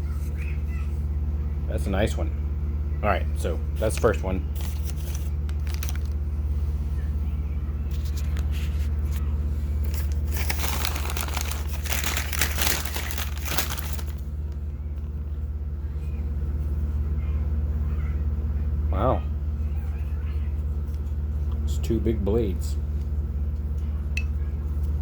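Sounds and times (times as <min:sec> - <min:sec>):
steady low hum: 0:00.0 - 0:25.0
plastic packaging crinkling: 0:03.8 - 0:06.4, 0:09.8 - 0:14.6.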